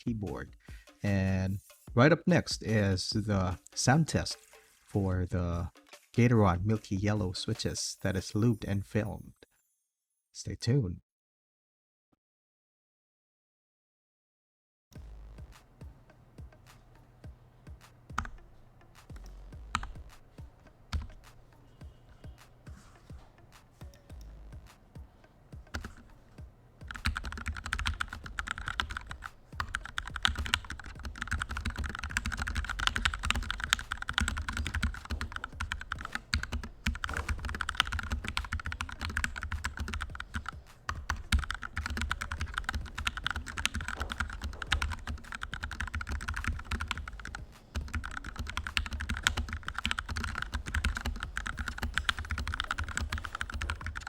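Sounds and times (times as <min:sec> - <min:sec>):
mechanical keyboard typing: 0:19.2 - 0:20.1, 0:20.9 - 0:21.2, 0:25.6 - 0:26.1, 0:26.8 - 0:54.0.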